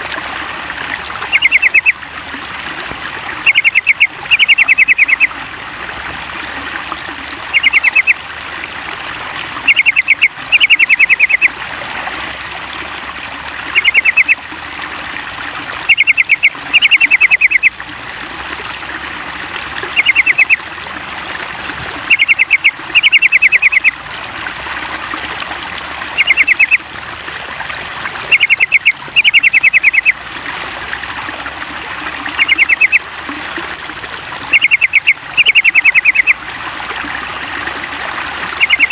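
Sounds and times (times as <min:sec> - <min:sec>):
trickling water: 0:00.0 - 0:38.9
bird chattering song: 0:01.2 - 0:02.0, 0:03.4 - 0:05.3, 0:07.5 - 0:08.2, 0:09.6 - 0:11.5, 0:13.7 - 0:14.4, 0:15.9 - 0:17.7, 0:20.0 - 0:20.6, 0:22.1 - 0:24.0, 0:26.2 - 0:26.8, 0:28.3 - 0:30.1, 0:32.4 - 0:33.0, 0:34.5 - 0:36.4, 0:38.6 - 0:38.9.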